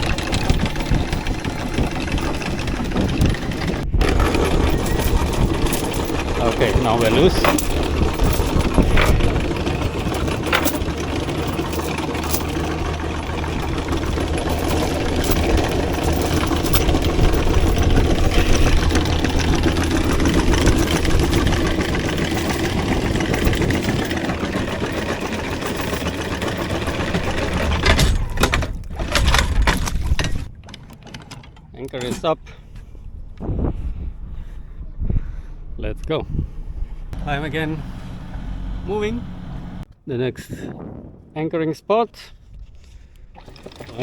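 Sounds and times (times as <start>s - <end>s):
chain clanks and knocks: 0.0s - 33.5s, 43.4s - 44.0s
boat engine running: 0.0s - 39.9s, 43.3s - 44.0s
windlass motor whir: 0.0s - 40.0s, 42.5s - 44.0s.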